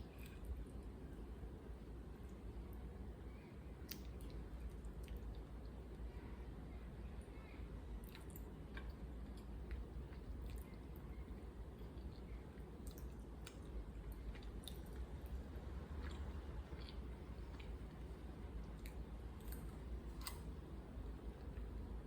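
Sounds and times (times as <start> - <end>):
steady low hum: 0.0 - 22.0
person chewing food: 8.0 - 20.6.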